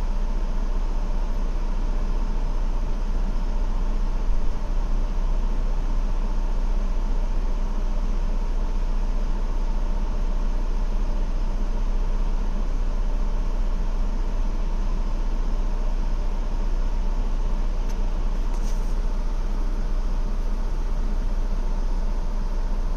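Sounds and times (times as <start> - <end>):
car engine idling: 14.0 - 22.9.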